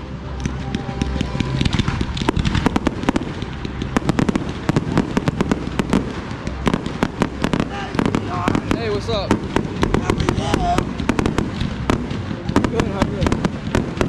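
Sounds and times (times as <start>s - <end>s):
fireworks bangs and crackles: 0.0s - 14.0s
low rumble: 0.0s - 14.0s.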